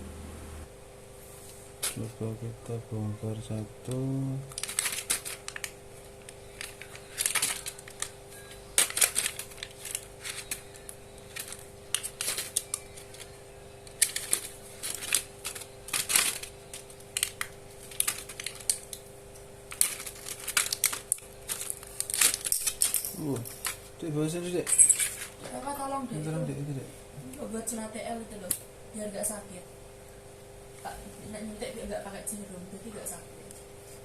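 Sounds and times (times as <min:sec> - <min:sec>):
faint two-tone hum: 0:00.0 - 0:34.0
plastic parts clicking and snapping: 0:08.8 - 0:13.3, 0:13.9 - 0:19.0, 0:19.7 - 0:23.8.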